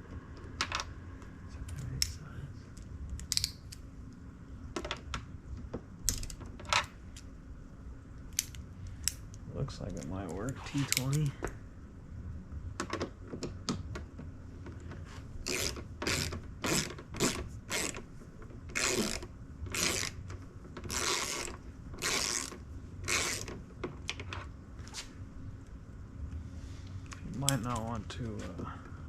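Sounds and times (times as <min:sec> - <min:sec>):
screwdriver clicking and rasping: 0:03.2 - 0:03.8, 0:15.5 - 0:18.0, 0:18.7 - 0:20.2, 0:20.8 - 0:23.5.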